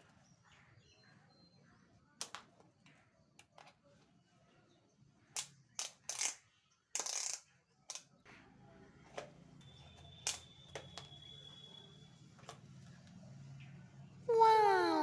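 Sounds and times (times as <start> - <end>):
faint high tone: 14.3 - 15.0.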